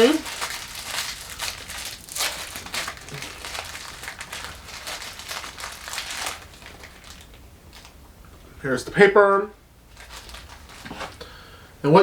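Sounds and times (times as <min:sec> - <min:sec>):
plastic wrapper crinkling: 0:00.0 - 0:08.0, 0:09.9 - 0:11.2.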